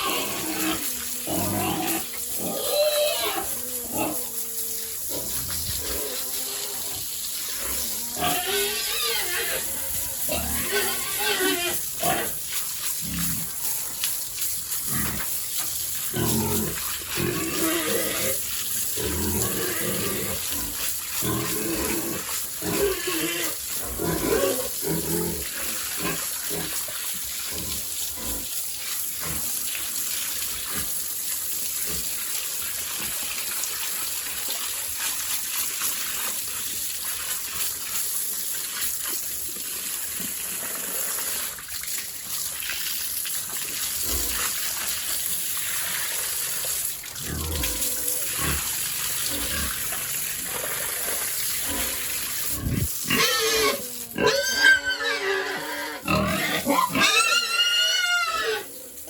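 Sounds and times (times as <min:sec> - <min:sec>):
pigs grunting and squealing: 0:00.0 - 0:14.0, 0:14.7 - 0:15.4, 0:16.0 - 0:28.6, 0:44.0 - 0:44.7, 0:45.6 - 0:59.0
running water: 0:00.0 - 0:59.0.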